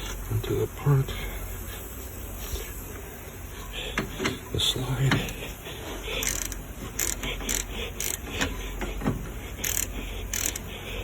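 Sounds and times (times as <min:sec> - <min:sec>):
ratchet wrench clicking: 0:06.2 - 0:08.6, 0:09.6 - 0:10.7.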